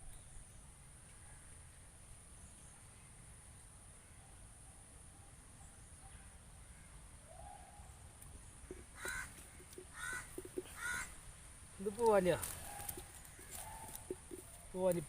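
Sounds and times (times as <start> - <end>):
faint steady background: 0.0 - 15.0
crow cawing: 8.6 - 11.2, 12.1 - 14.6.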